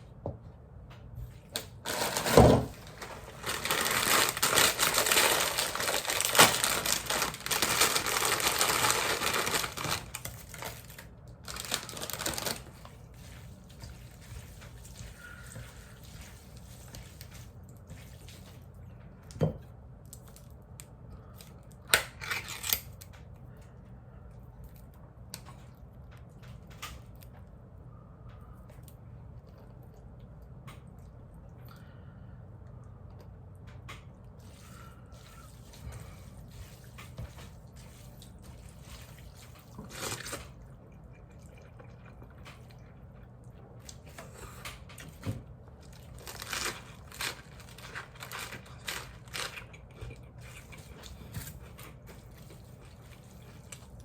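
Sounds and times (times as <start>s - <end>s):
packaging crinkling and tearing: 1.5s - 13.1s, 21.8s - 23.0s, 39.7s - 40.6s, 45.2s - 53.9s.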